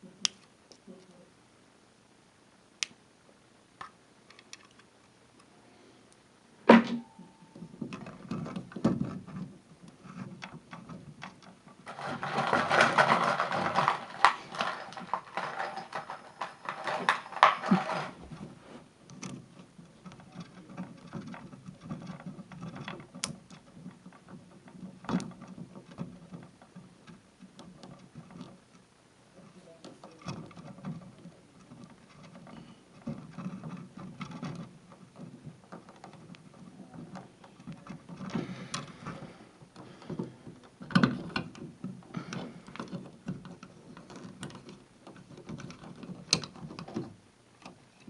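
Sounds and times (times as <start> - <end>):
sharp knock: 6.7 - 7.2
rattling and clicking: 6.8 - 48.0.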